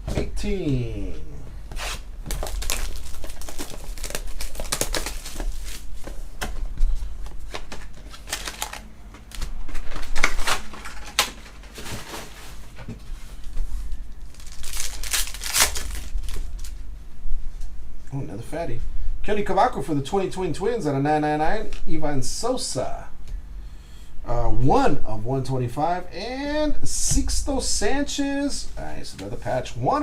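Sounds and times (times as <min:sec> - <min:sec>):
steady low hum: 0:00.0 - 0:30.0
cards being handled: 0:01.7 - 0:12.2
wrappers crinkling: 0:01.8 - 0:06.2, 0:07.4 - 0:12.4, 0:13.8 - 0:16.8.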